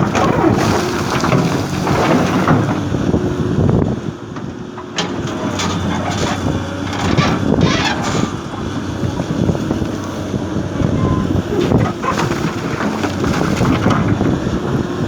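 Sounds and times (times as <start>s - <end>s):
excavator diesel engine running: 0.0s - 15.0s
knocks and scrapes: 5.0s - 8.9s.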